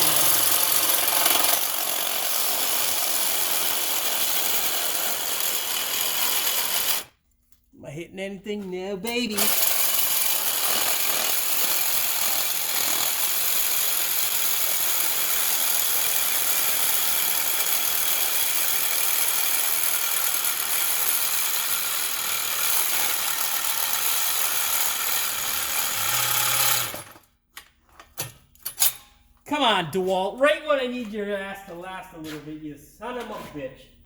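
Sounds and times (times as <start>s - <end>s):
reciprocating saw cutting metal pipe: 0.0s - 7.1s, 9.3s - 27.1s.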